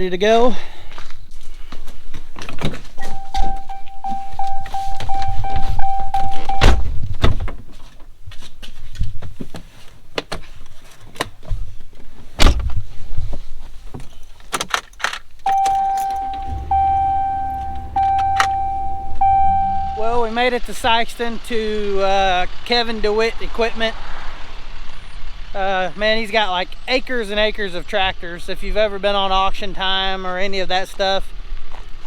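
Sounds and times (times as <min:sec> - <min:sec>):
car door warning chime: 0:03.0 - 0:06.9, 0:15.5 - 0:20.2.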